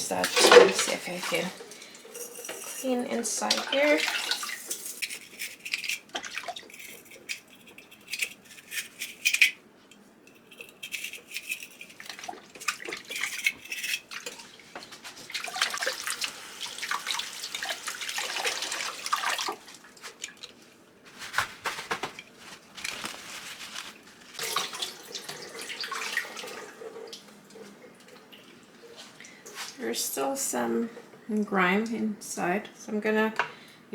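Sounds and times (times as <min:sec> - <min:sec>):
running water: 0:00.0 - 0:07.2, 0:11.8 - 0:29.8
brush scrubbing plastic: 0:00.0 - 0:09.5, 0:10.4 - 0:15.8, 0:19.1 - 0:24.6
water splashing and dripping: 0:03.3 - 0:04.8.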